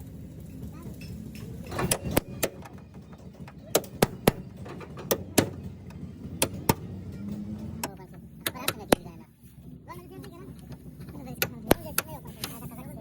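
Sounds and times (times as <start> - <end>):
sharp knocks: 1.6 - 9.2.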